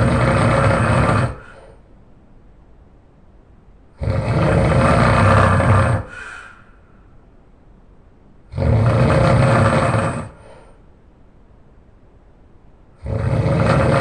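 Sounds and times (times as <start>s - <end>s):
person snoring loudly: 0.0s - 1.7s, 4.0s - 6.6s, 8.5s - 10.6s, 13.0s - 14.0s.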